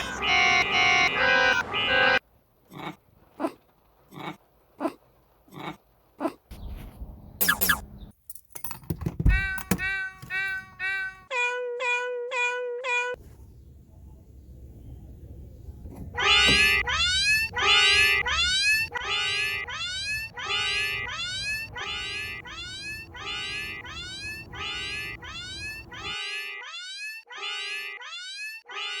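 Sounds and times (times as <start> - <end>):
cat meowing: 9.8 - 13.2, 16.1 - 29.0.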